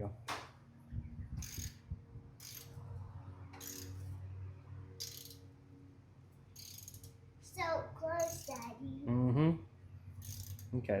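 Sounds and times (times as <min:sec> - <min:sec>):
ratchet clicking: 0:01.4 - 0:01.8, 0:02.4 - 0:02.8, 0:03.6 - 0:04.0, 0:05.0 - 0:05.4, 0:06.6 - 0:07.2, 0:08.2 - 0:08.7, 0:10.2 - 0:10.8.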